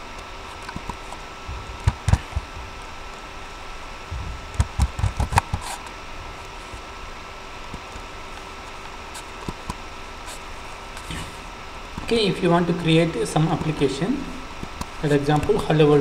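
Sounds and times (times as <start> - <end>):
steady electrical hum: 0.0 - 16.0.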